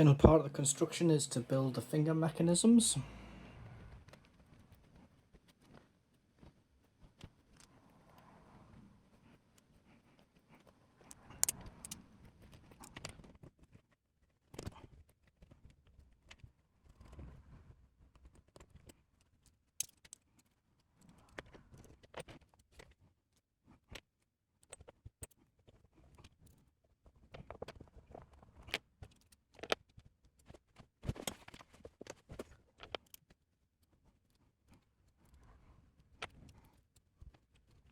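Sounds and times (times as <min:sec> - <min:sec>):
plastic parts clicking and rattling: 0:18.1 - 0:23.0, 0:24.6 - 0:33.5.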